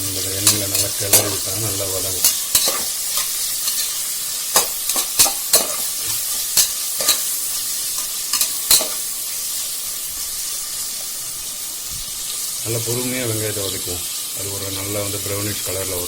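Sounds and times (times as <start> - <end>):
onions sizzling in hot oil: 0.0 - 16.0.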